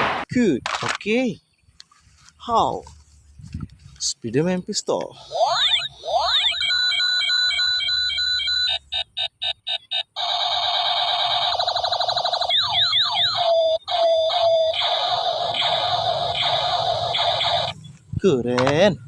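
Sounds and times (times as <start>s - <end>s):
siren-like electronic bursts: 5.2s - 17.9s
machine-gun-style electronic pulsing: 8.7s - 17.8s
pulsing electronic tone: 9.7s - 17.9s
toy gun laser sweeps: 10.2s - 17.7s.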